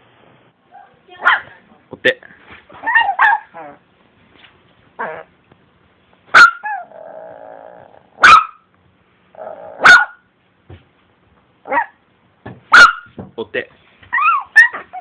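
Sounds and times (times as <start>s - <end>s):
dog yipping softly: 2.8s - 3.8s, 12.7s - 13.1s, 14.1s - 15.0s
dog growling: 2.9s - 3.8s, 5.0s - 5.3s, 6.7s - 8.2s, 9.3s - 9.9s
dog barking sharply: 6.3s - 6.6s, 8.2s - 8.6s, 9.8s - 10.2s, 12.7s - 13.2s.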